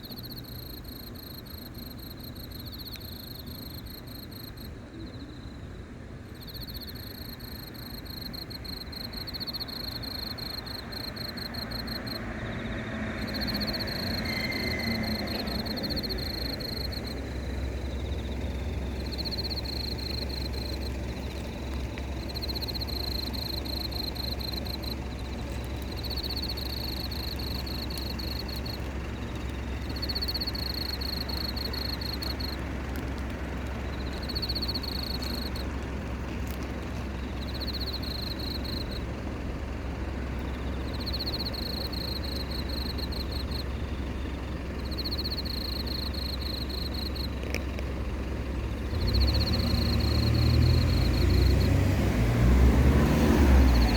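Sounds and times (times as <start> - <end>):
cricket chirping: 0.0 - 53.9
traffic rumble: 0.0 - 53.9
vehicle approaching: 6.3 - 53.9.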